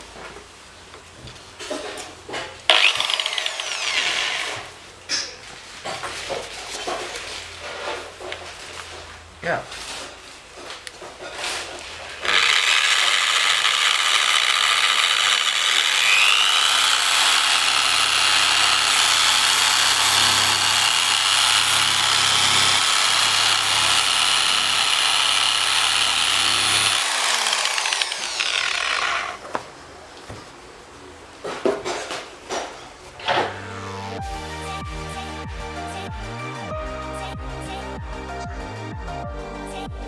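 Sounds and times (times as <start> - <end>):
power tool motor whine: 2.7 - 4.8, 12.2 - 29.4.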